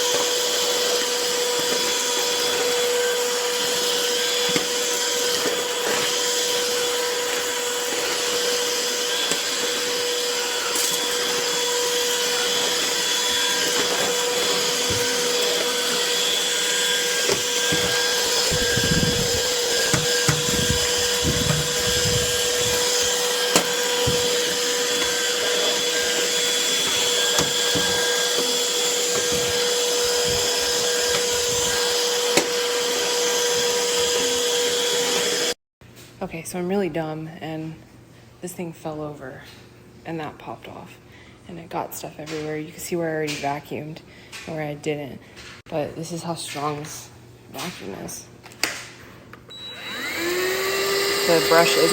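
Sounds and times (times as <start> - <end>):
vacuum cleaner running: 0.0 - 35.6, 49.5 - 51.9.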